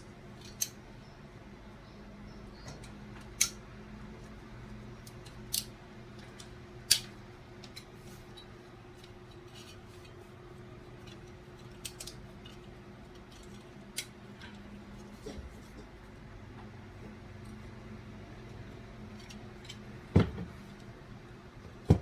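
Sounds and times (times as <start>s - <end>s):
steady low hum: 0.0s - 22.0s
light clicks of small parts: 0.4s - 0.8s, 2.4s - 16.7s, 18.4s - 19.9s.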